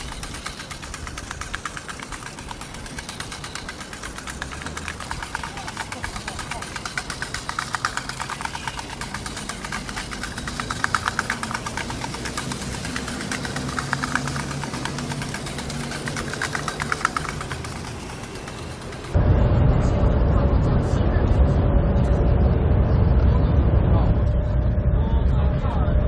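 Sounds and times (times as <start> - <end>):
rapid ticking: 0.0 - 19.2
small engine running: 0.0 - 19.2
deep engine rumble: 0.0 - 26.0.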